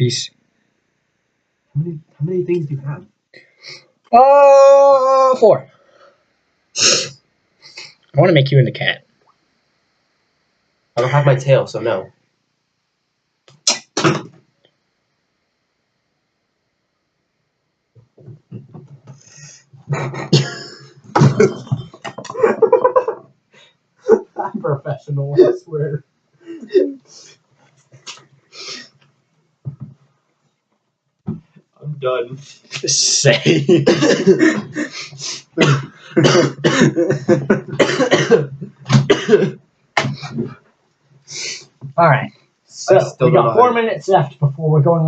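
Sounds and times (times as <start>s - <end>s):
person making wordless vocal noises: 1.8s - 5.6s, 6.8s - 7.9s, 18.4s - 23.2s, 24.1s - 27.3s, 31.8s - 40.6s
person coughing: 13.7s - 14.3s, 19.2s - 23.2s, 33.6s - 40.5s.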